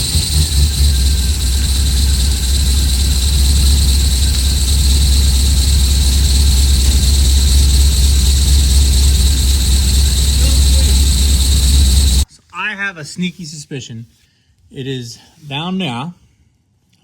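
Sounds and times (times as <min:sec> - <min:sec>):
car engine idling: 0:00.0 - 0:12.2.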